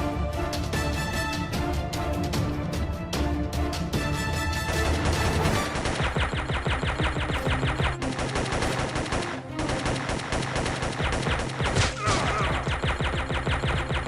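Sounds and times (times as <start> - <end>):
rapid automatic gunfire: 4.7 - 14.0.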